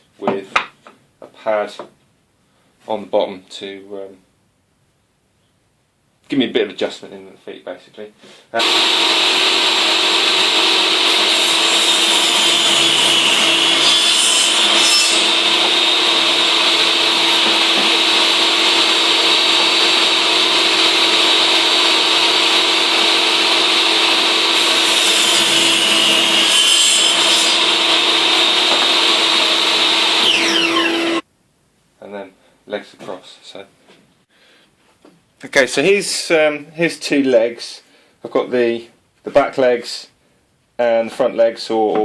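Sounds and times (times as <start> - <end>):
electric saw cutting wood: 8.6 - 31.2.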